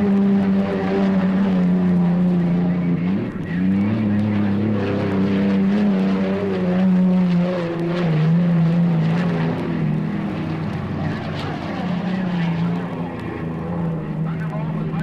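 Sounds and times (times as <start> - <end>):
engine running: 0.0 - 15.0.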